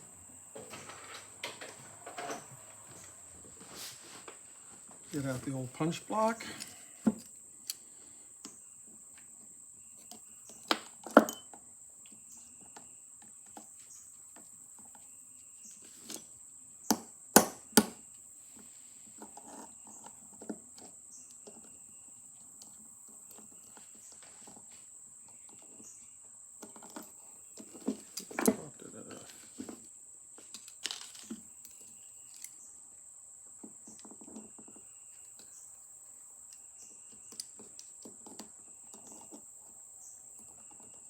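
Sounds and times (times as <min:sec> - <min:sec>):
metal tools knocking on workbench: 0:11.0 - 0:11.5.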